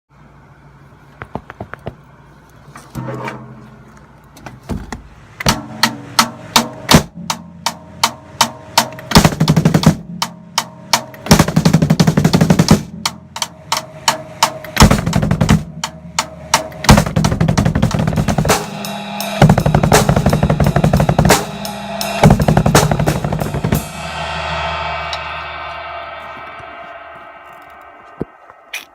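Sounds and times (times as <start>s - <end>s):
metal drum kit with double bass: 2.9s - 4.3s, 5.0s - 28.9s
cymbal ringing: 18.2s - 28.9s.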